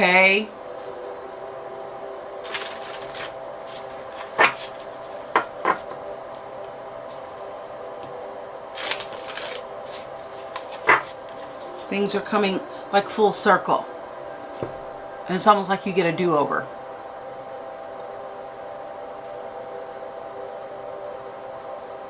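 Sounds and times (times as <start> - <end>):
faint steady hum: 0.0 - 22.0
cards shuffling: 2.4 - 6.0, 8.8 - 11.9
cards tapping down: 2.5 - 6.0, 8.8 - 11.5.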